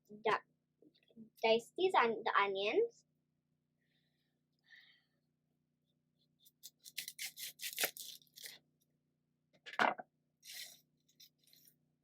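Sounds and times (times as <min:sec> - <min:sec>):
knife cutting onion: 0:06.4 - 0:08.7.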